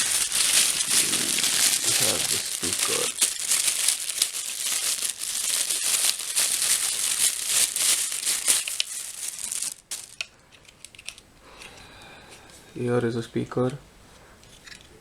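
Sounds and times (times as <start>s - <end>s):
packaging crinkling and rustling: 0.0s - 11.2s.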